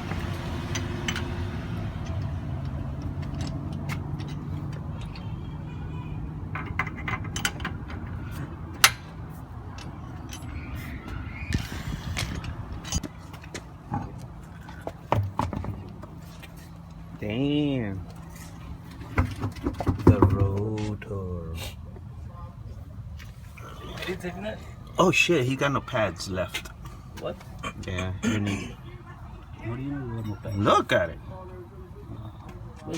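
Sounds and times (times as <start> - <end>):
metal tools clicking and knocking: 0.0 - 5.4, 6.5 - 10.8.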